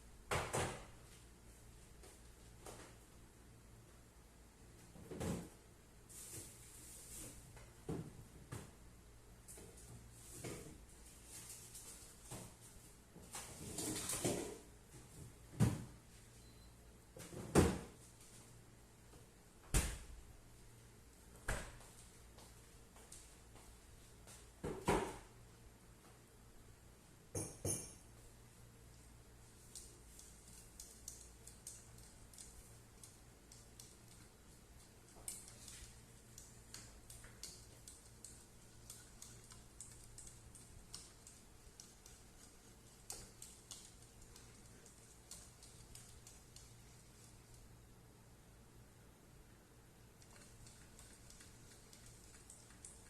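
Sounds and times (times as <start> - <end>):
light clicks and taps of kitchen work: 28.9 - 47.8, 49.5 - 53.0.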